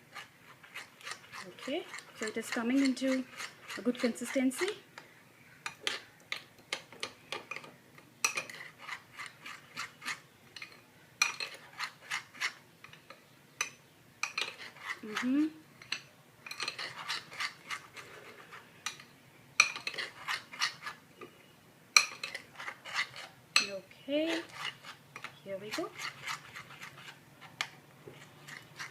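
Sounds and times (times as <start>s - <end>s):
utensil scraping in cup: 0.0s - 4.8s, 8.3s - 10.2s, 11.2s - 12.6s, 14.3s - 15.5s, 16.5s - 19.0s, 19.6s - 21.0s, 22.1s - 28.9s.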